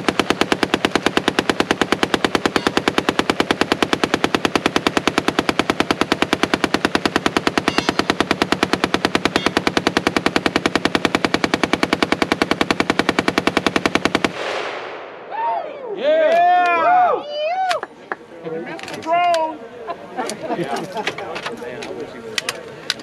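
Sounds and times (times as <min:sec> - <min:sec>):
machine gun burst: 0:00.0 - 0:14.7.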